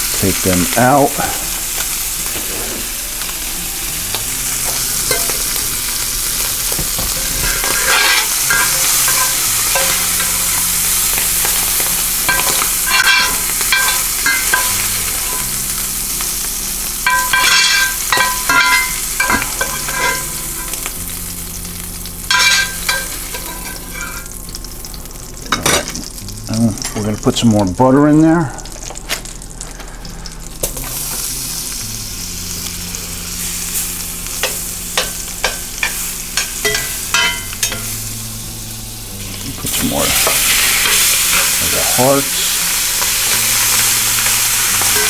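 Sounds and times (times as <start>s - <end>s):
meat sizzling in a pan: 0.0s - 45.0s
utensil scraping a pan: 0.8s - 15.5s, 17.0s - 21.0s, 22.3s - 24.4s, 33.7s - 38.1s, 39.6s - 45.0s.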